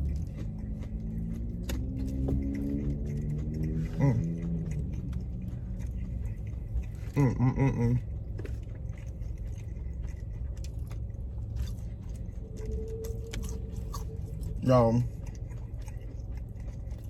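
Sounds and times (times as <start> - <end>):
chewing and crunching food: 0.0 - 17.0
steady low hum: 0.0 - 17.0
person humming: 7.1 - 8.0.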